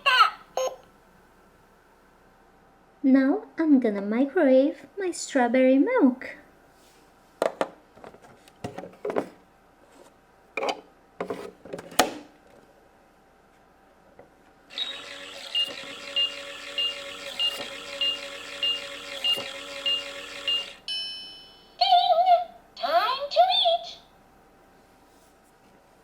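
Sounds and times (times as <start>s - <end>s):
toy microwave electronic hum: 0.0s - 0.9s, 14.7s - 23.9s.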